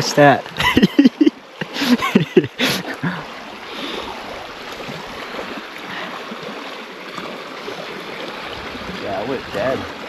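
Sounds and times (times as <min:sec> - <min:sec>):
rushing water: 0:00.0 - 0:10.0
wind: 0:00.0 - 0:10.0.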